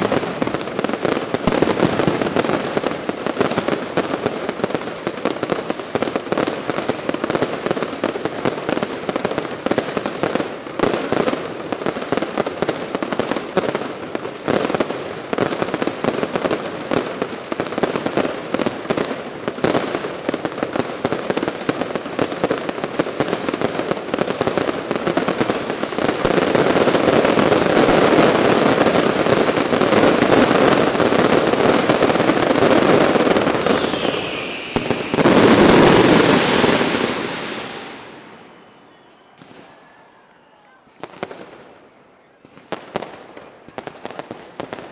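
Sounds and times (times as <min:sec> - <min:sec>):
fireworks crackling: 0:00.0 - 0:40.0
falling firework whistle: 0:31.6 - 0:41.2.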